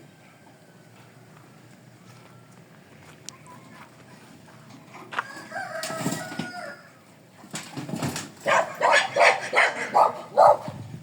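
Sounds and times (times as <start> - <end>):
rooster crowing: 5.1 - 7.0.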